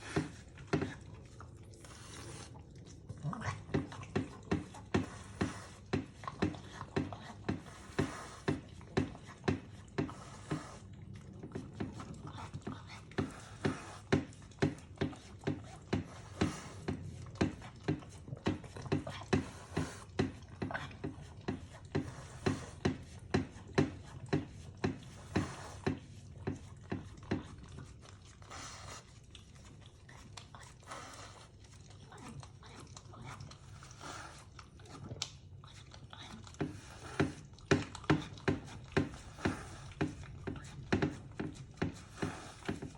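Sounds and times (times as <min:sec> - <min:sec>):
dog licking a dish: 0:00.0 - 0:42.9.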